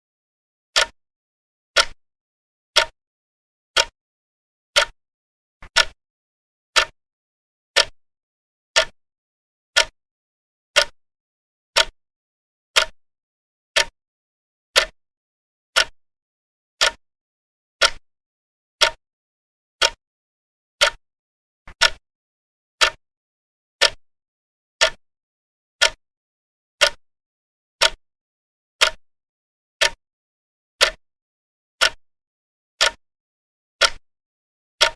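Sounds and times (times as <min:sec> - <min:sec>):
clock ticking: 0:00.8 - 0:01.0, 0:01.8 - 0:02.0, 0:02.8 - 0:03.0, 0:03.8 - 0:04.0, 0:04.8 - 0:05.0, 0:05.6 - 0:06.0, 0:06.8 - 0:07.0, 0:07.8 - 0:08.0, 0:08.8 - 0:09.0, 0:09.8 - 0:10.0, 0:10.8 - 0:11.0, 0:11.8 - 0:12.0, 0:12.8 - 0:13.0, 0:13.8 - 0:14.0, 0:14.8 - 0:15.0, 0:15.8 - 0:16.0, 0:16.8 - 0:17.0, 0:17.8 - 0:18.0, 0:18.8 - 0:19.0, 0:19.8 - 0:20.0, 0:20.8 - 0:21.0, 0:21.7 - 0:22.0, 0:22.8 - 0:23.0, 0:23.8 - 0:24.0, 0:24.8 - 0:25.0, 0:25.8 - 0:26.0, 0:26.8 - 0:27.0, 0:27.8 - 0:28.0, 0:28.8 - 0:29.0, 0:29.8 - 0:30.0, 0:30.8 - 0:31.0, 0:31.8 - 0:32.0, 0:32.8 - 0:33.0, 0:33.8 - 0:34.0.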